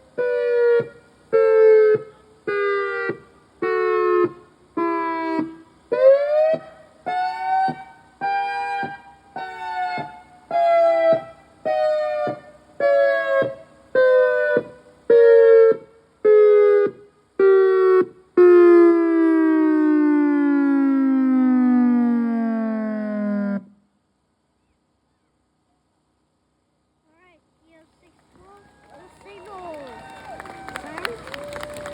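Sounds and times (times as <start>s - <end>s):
siren long falling tone: 0.0s - 23.8s
siren pulsing: 0.2s - 23.7s.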